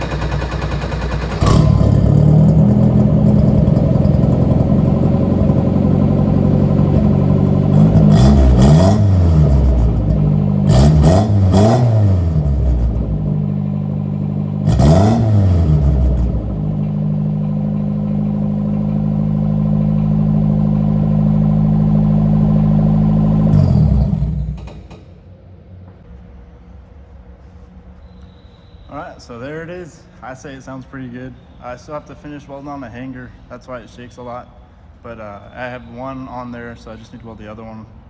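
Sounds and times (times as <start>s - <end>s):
car engine revving and idling: 0.0s - 25.0s.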